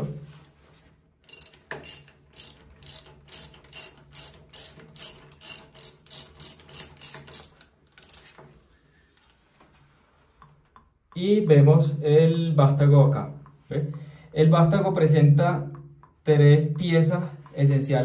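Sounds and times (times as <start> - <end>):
ratchet clicking: 1.2 - 8.3.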